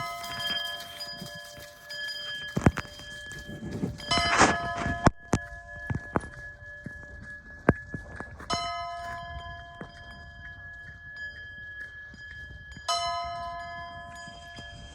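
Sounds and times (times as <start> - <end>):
bell ringing: 0.0 - 6.8.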